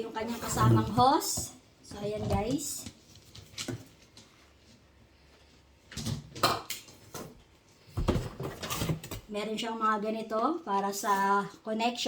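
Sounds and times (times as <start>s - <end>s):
plastic knocks and rustles: 5.9s - 9.3s.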